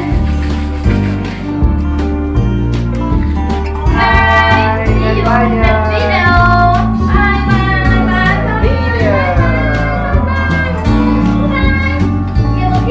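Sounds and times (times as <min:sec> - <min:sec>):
steady bass beat: 0:00.0 - 0:11.0
child-like singing voice: 0:04.0 - 0:12.9.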